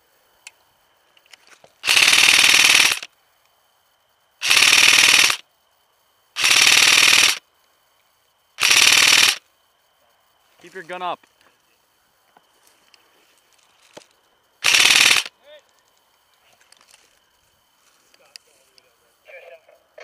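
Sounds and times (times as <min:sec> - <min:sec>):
airsoft rifle automatic fire: 0:01.8 - 0:03.1, 0:04.4 - 0:05.4, 0:06.4 - 0:07.4, 0:08.6 - 0:09.4, 0:14.6 - 0:15.3.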